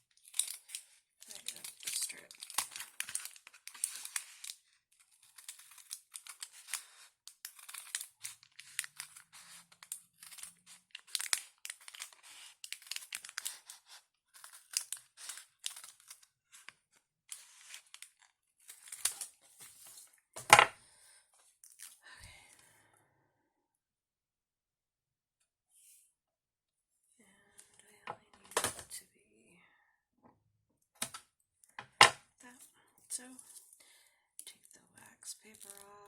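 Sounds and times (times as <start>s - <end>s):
paper rustling: 0.2s - 20.1s
scissors snipping paper: 5.1s - 16.7s.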